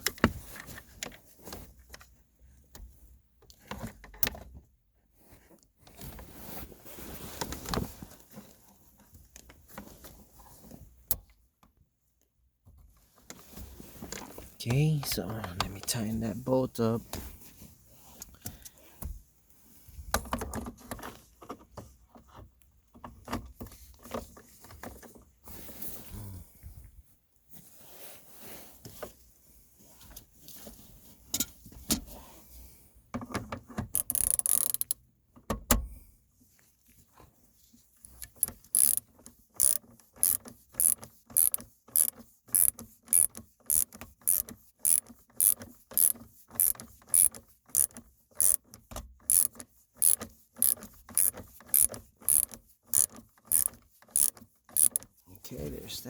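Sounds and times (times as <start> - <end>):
scattered clicks and knocks: 33.3 - 35.0, 38.2 - 55.1
ratchet wrench ratcheting: 34.0 - 35.0, 38.2 - 55.1.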